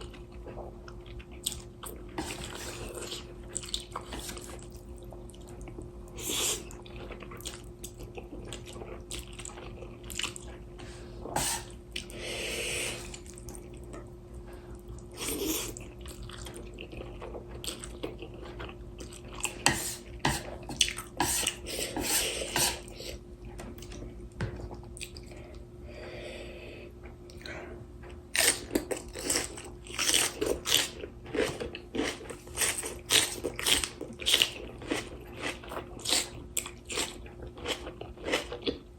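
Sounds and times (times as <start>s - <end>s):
faint steady hum: 0.0s - 38.9s
wet chewing and crunchy bites: 6.6s - 10.6s, 28.1s - 38.9s.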